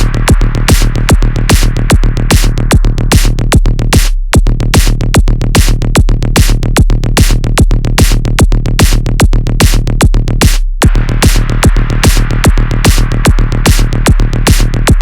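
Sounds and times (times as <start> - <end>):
electronic dance music: 0.0 - 4.1, 10.4 - 15.0.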